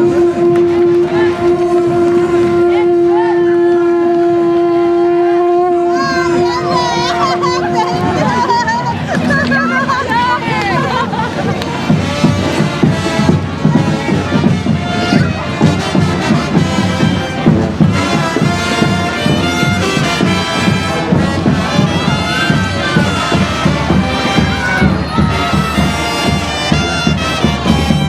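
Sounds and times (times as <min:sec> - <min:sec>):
marching band wind instruments: 0:00.0 - 0:28.0
steady drumbeat: 0:06.2 - 0:28.0.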